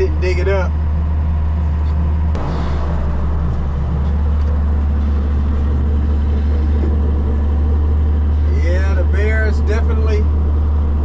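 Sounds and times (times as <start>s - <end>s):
tractor engine running: 0.0s - 11.0s.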